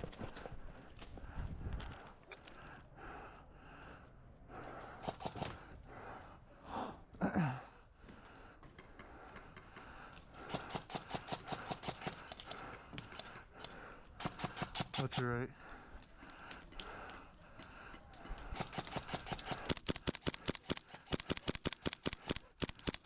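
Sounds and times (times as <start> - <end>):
person gasping: 4.6 - 11.2.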